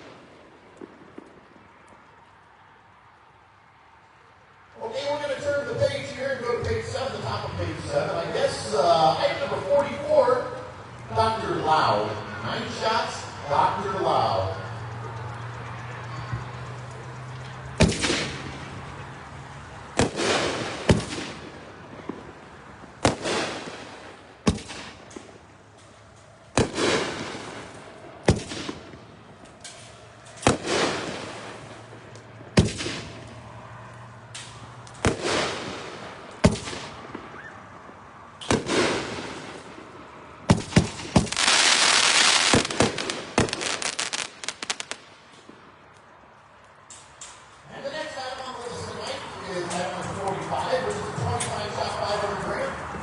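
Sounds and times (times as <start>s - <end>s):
firework crackling: 0.0s - 2.6s, 4.8s - 45.8s
firework reports: 4.8s - 25.8s, 26.5s - 33.8s, 34.5s - 45.7s, 47.7s - 53.0s
firework pops: 20.0s - 22.4s, 23.0s - 25.4s, 29.6s - 31.6s, 34.4s - 39.7s, 40.5s - 45.6s.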